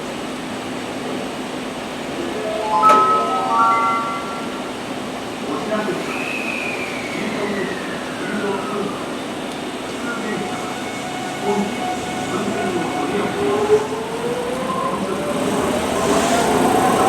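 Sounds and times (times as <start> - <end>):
train traction motors whining: 6.0 - 17.0.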